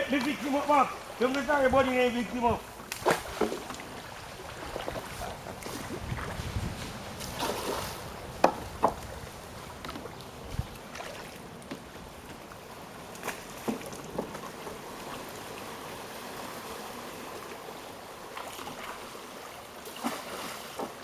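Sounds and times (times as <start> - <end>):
water lapping around a raft: 0.0 - 21.0.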